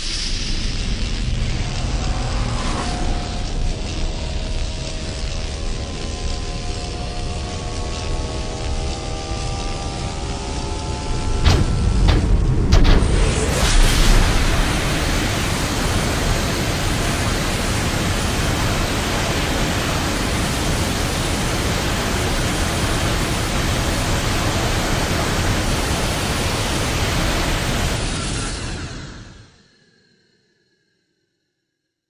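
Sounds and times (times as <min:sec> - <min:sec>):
steady rushing noise: 0:11.4 - 0:18.9.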